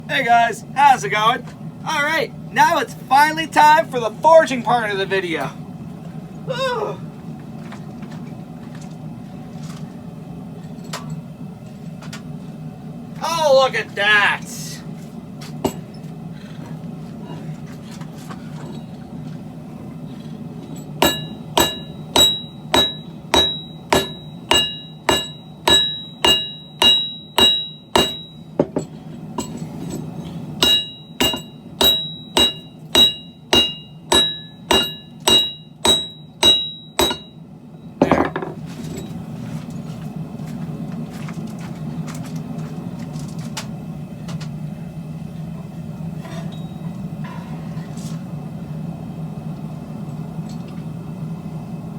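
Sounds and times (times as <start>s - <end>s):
steady low hum: 0.0s - 51.9s
hammer blows on steel: 21.0s - 37.4s.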